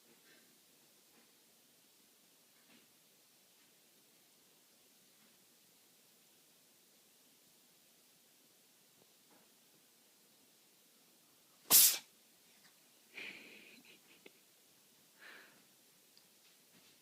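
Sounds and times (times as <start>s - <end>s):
cat sneezing: 11.6s - 12.1s.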